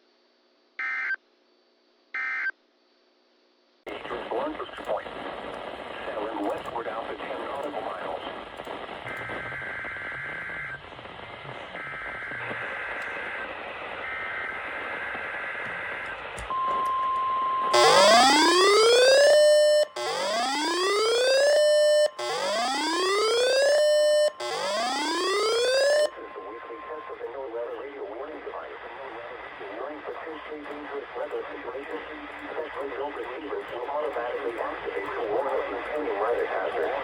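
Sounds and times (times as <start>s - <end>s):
rising whooping alarm siren: 17.6s - 26.2s.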